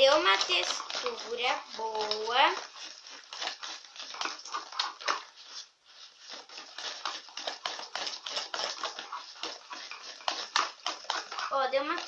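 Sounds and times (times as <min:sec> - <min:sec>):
slime stirred in plastic pot: 0:00.0 - 0:12.0.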